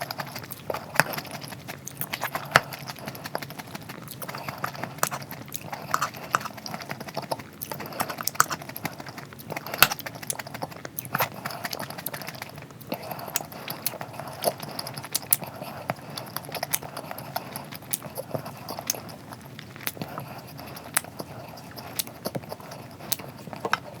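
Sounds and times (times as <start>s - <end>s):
chewing with crunches: 0.0s - 24.0s
wet mouth clicks: 0.0s - 24.0s.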